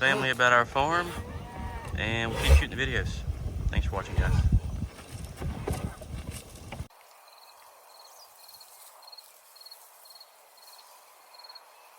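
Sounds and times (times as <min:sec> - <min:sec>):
wind and microphone handling: 0:00.0 - 0:06.9.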